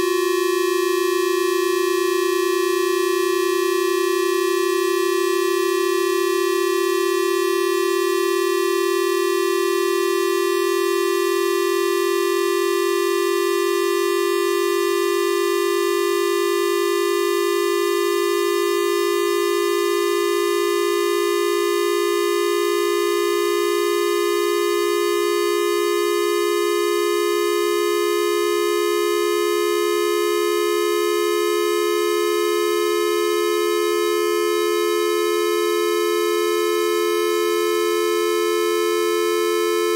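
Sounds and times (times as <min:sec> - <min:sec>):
steady square-wave tone: 0:00.0 - 0:39.9.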